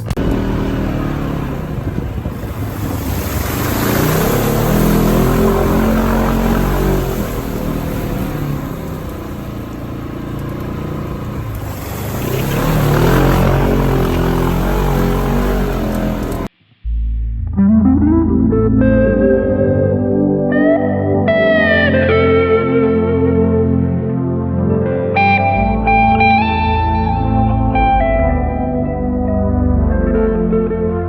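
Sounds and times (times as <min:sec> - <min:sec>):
off-road engines revving past: 0:00.0 - 0:16.5.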